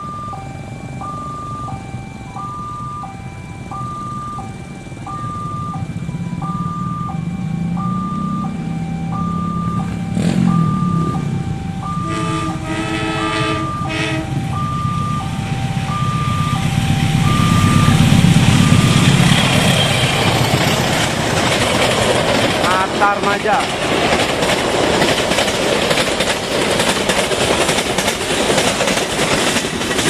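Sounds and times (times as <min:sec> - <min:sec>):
two-tone level crossing siren: 0:00.0 - 0:23.7
train rumbling: 0:00.0 - 0:30.0
train horn blasts: 0:12.0 - 0:14.6.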